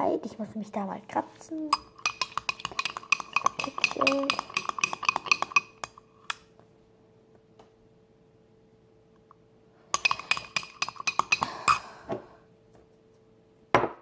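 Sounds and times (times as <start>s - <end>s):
utensil clinking against bowl: 1.7s - 6.4s, 10.0s - 12.0s.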